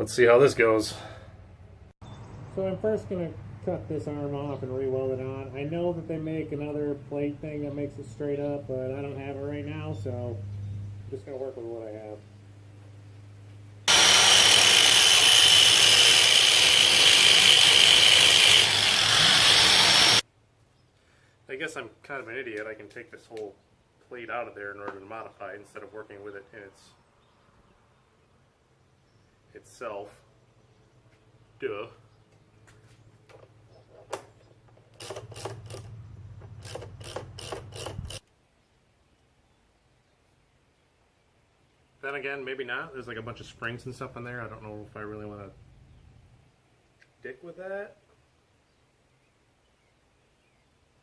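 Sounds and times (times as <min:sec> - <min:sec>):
power tool cutting metal: 0:13.9 - 0:20.2, 0:36.6 - 0:38.2.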